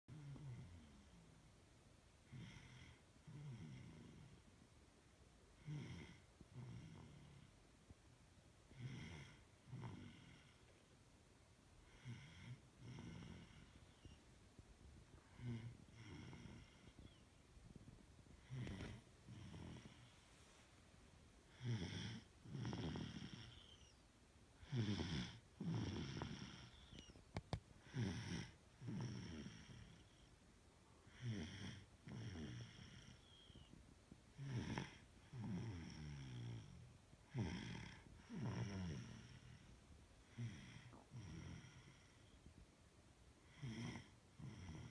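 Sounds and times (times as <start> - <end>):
person snoring: 11.9 - 14.2, 15.2 - 17.2, 18.4 - 20.1, 21.5 - 24.0, 24.6 - 27.1, 27.8 - 30.2, 31.1 - 33.5, 34.4 - 39.7, 40.3 - 42.2, 43.5 - 44.9.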